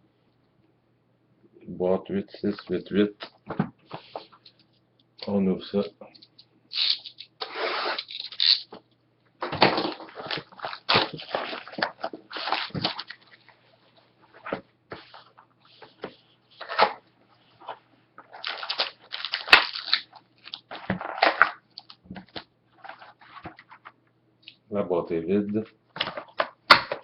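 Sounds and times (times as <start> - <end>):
shrink-wrap crinkling and tearing: 6.7 - 8.8, 9.4 - 13.4, 18.2 - 23.2.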